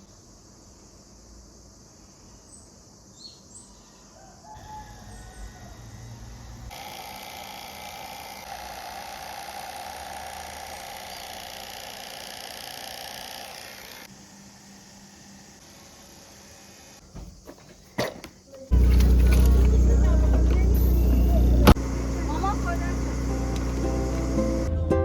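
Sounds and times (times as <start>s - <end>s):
rooster crowing: 4.1s - 6.8s
birds chirping: 17.0s - 24.7s.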